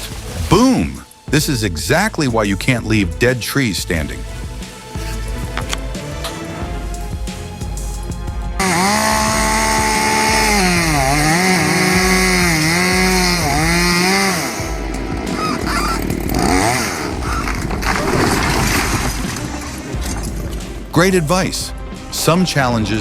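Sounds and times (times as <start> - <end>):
rough mixed noise: 3.9 - 23.0
chainsaw running at high revs: 8.6 - 17.8.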